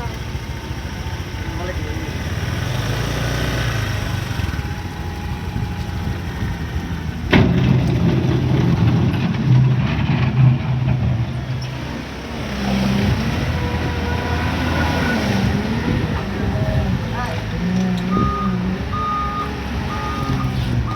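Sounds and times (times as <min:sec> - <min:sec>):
heavy machinery diesel engine: 0:00.0 - 0:20.9.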